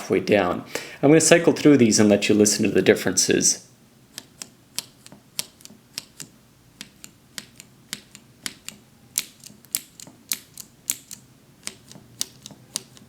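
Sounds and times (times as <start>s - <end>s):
mechanical keyboard keys clacking: 4.3s - 13.0s.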